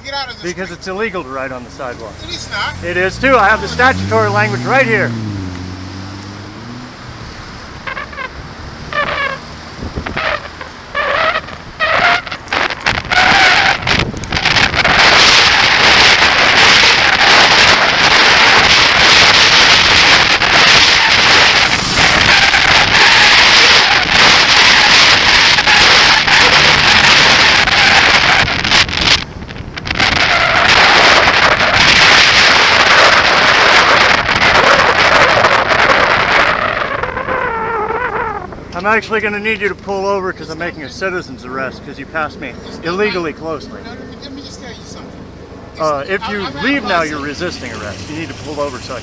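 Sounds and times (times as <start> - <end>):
motor traffic: 0.0 - 49.0
wind rushing over microphone: 1.4 - 39.6.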